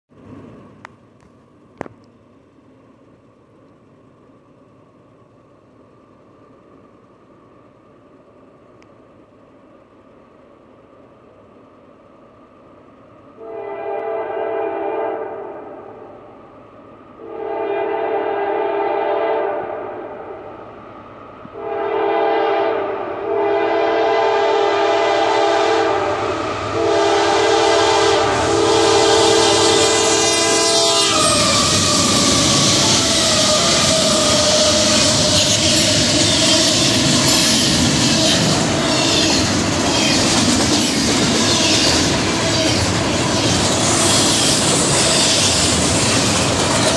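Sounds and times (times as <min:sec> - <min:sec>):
train rushing past: 0:09.6 - 0:46.9
locomotive horn blasts: 0:13.4 - 0:16.1, 0:17.2 - 0:20.2, 0:21.5 - 0:36.7
wheels clicking on rails: 0:29.2 - 0:46.9.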